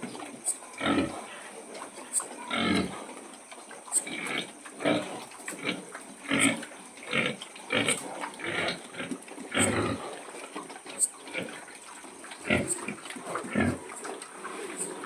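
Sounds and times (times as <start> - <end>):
pigs grunting: 0.0 - 15.0.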